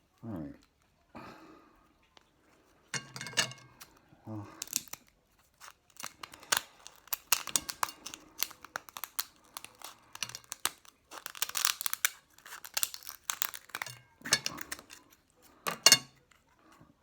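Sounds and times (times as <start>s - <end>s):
crinkling and tearing: 3.6s - 17.0s.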